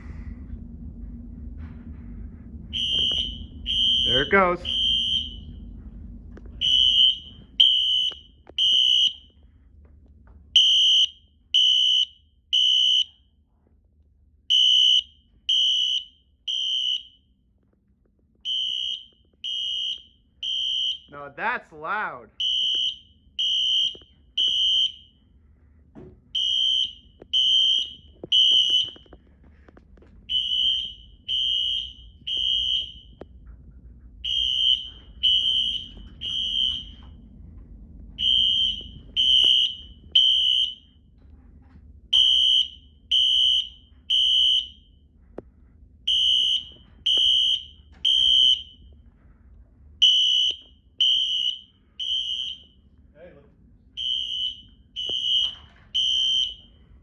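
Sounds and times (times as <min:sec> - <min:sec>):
fire alarm horns beeping: 0:02.7 - 0:05.8, 0:06.5 - 0:09.4, 0:10.6 - 0:13.4, 0:14.5 - 0:17.3, 0:18.4 - 0:25.3, 0:26.4 - 0:33.3, 0:34.2 - 0:37.2, 0:38.2 - 0:41.1, 0:42.1 - 0:45.0, 0:46.1 - 0:49.0, 0:50.0 - 0:53.0, 0:54.0 - 0:56.9.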